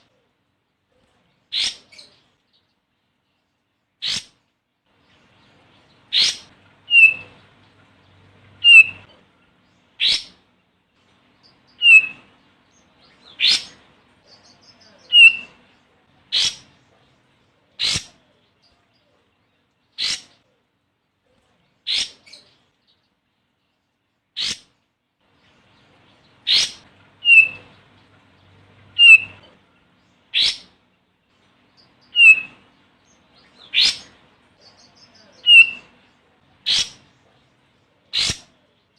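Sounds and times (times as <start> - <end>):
bird call notes: 6.1 - 7.4, 8.6 - 9.1, 11.8 - 12.2, 15.1 - 15.5, 26.5 - 27.8, 28.9 - 29.5, 32.1 - 32.6, 35.3 - 35.9
bird down-slurred chirp: 6.1 - 7.4, 8.5 - 9.1, 11.7 - 12.3, 14.4 - 15.6, 26.4 - 27.8, 28.8 - 29.5, 31.8 - 32.6, 33.6 - 36.0.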